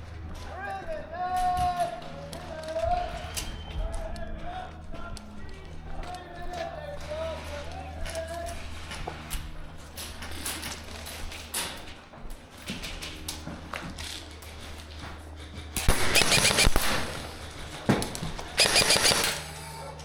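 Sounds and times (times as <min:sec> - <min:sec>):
scattered clicks: 0:15.8 - 0:17.2, 0:18.6 - 0:19.5
airsoft gun rapid shots: 0:15.8 - 0:17.4, 0:18.6 - 0:19.5.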